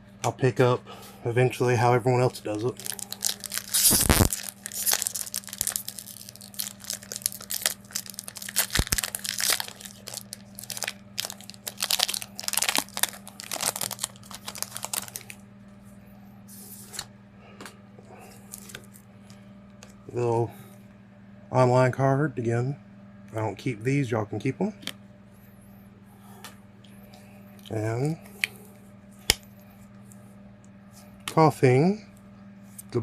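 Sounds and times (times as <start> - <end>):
foil wrapper tearing and crinkling: 2.5 - 15.4.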